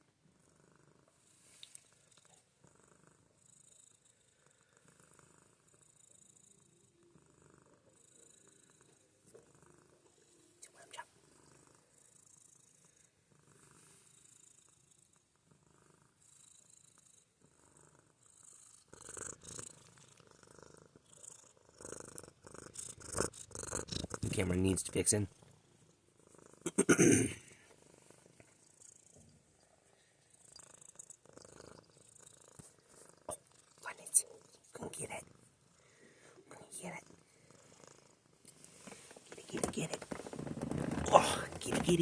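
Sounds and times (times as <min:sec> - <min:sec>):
cat purring: 0:00.0 - 0:42.0
rustling: 0:38.4 - 0:42.0.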